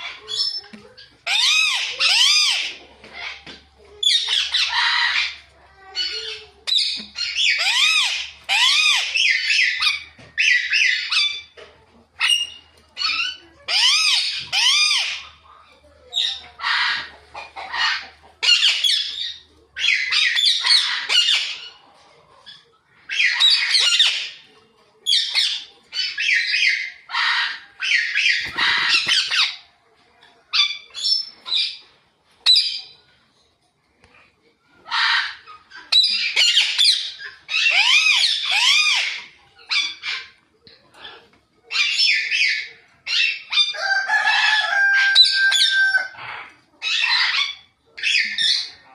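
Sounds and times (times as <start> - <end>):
parakeets squawking: 1.2 - 5.4, 6.0 - 11.6, 12.2 - 15.4, 16.1 - 21.8, 25.1 - 29.6, 34.9 - 40.4, 41.0 - 48.8.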